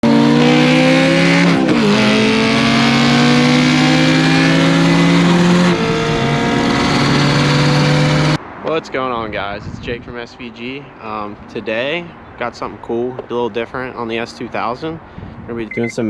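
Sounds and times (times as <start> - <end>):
car engine revving high: 0.0 - 8.4.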